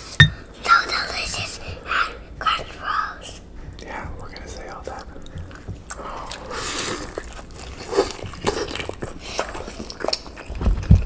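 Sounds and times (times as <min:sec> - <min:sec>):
dumplings being bitten and chewed: 0:05.0 - 0:11.0.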